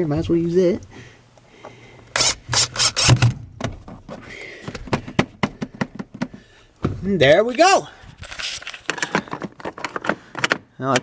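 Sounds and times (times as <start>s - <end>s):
impact driver motor humming: 2.2s - 3.2s
impact driver sharp clicks: 2.2s - 3.4s.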